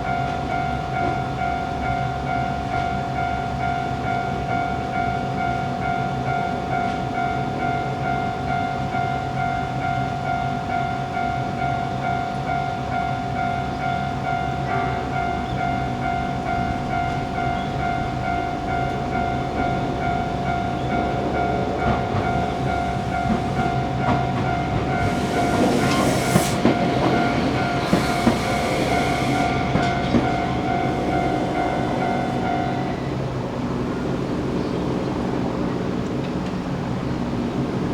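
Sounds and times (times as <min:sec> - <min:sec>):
level crossing bell ringing: 0:15.2 - 0:26.0, 0:26.7 - 0:33.2
train wheels clicking over rail joints: 0:20.6 - 0:32.9.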